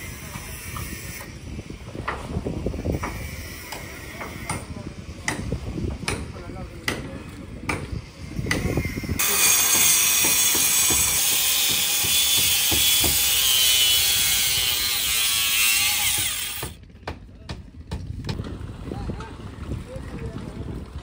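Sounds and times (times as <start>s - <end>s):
power tool whining on wood: 9.2s - 16.8s.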